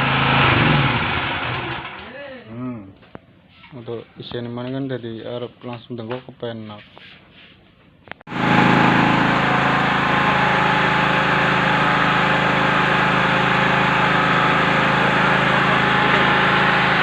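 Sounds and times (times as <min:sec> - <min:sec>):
generator engine running: 0:00.0 - 0:02.0, 0:08.3 - 0:17.0.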